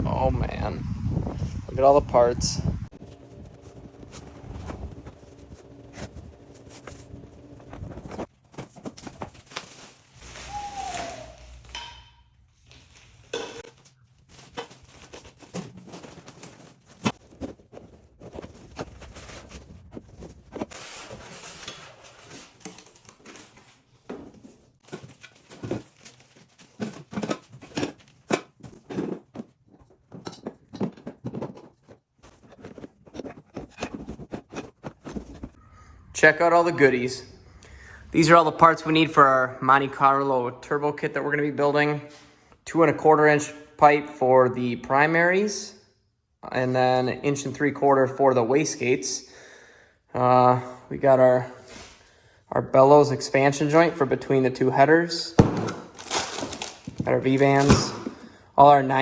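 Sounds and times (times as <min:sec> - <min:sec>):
packaging rustling and tearing: 0:07.8 - 0:11.7, 0:12.8 - 0:23.9, 0:55.7 - 0:58.3
knocks and clatter of parts: 0:13.3 - 0:35.6.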